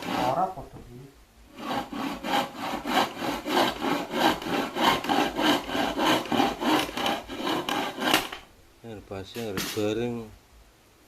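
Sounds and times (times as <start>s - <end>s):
hand saw cutting wood: 0.0s - 0.6s, 1.5s - 8.5s.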